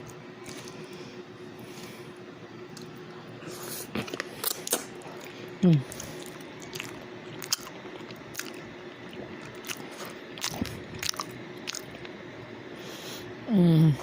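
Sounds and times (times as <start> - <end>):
faint steady hum: 0.0 - 14.0
person chewing food: 2.7 - 12.2.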